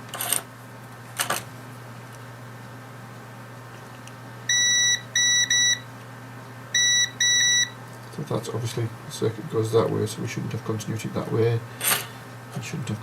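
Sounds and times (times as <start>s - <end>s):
multimeter high-pitched beeps: 4.5s - 5.8s, 6.8s - 7.8s.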